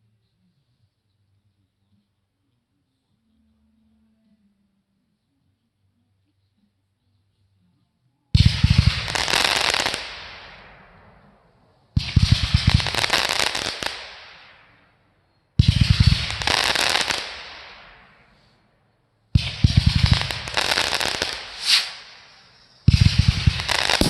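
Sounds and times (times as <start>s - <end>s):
fireworks crackling pops: 8.4s - 11.4s, 12.0s - 14.8s, 15.6s - 18.5s, 19.4s - 24.0s.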